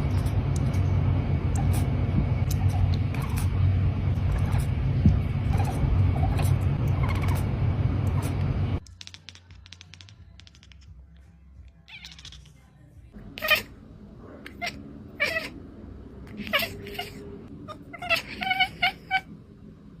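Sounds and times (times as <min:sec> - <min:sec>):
kittens meowing: 0:16.3 - 0:19.3.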